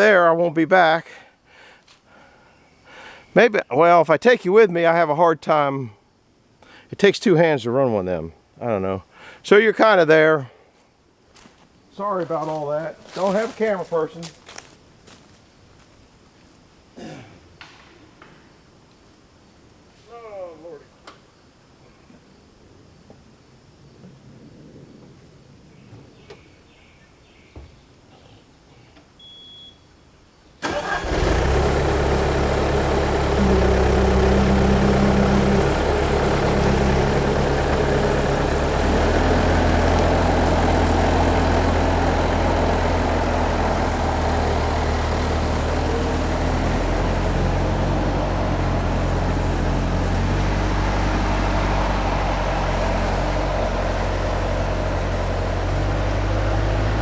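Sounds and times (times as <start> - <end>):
large machine engine running: 30.7 - 57.0.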